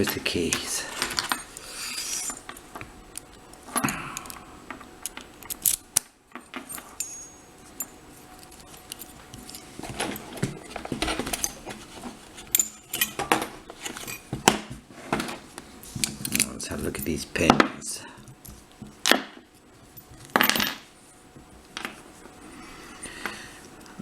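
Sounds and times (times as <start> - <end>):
small metal parts clicking: 0.0 - 9.7
keys jangling: 6.6 - 10.3.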